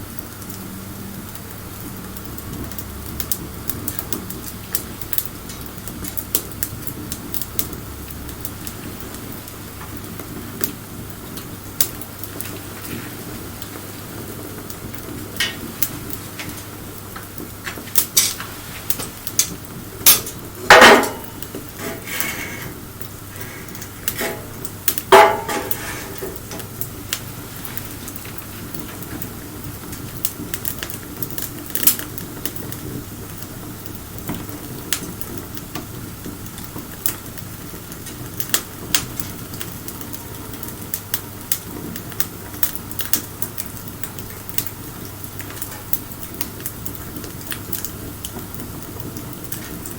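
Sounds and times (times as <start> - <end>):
wood fire crackling: 0.0 - 49.9
loud ringing knocks: 25.1 - 25.7.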